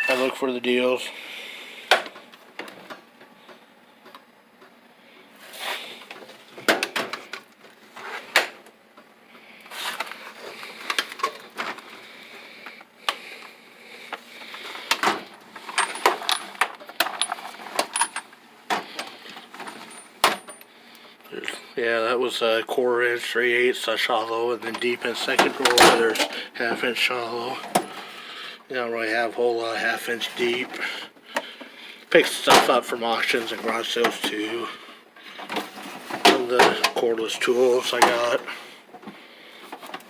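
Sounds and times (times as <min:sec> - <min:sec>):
tool chest drawers opening and shutting: 0:25.2 - 0:26.3.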